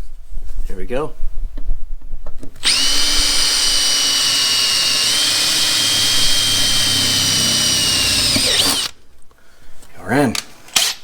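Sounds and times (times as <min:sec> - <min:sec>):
electric drill whining through metal: 0:02.6 - 0:09.0.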